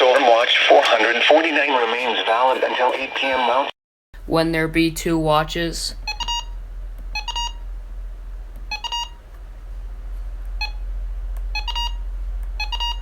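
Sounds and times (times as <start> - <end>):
steady low hum: 0.0 - 13.0
short electronic beeps: 6.0 - 6.6, 7.2 - 7.6, 8.7 - 9.2, 11.5 - 12.0, 12.6 - 13.0.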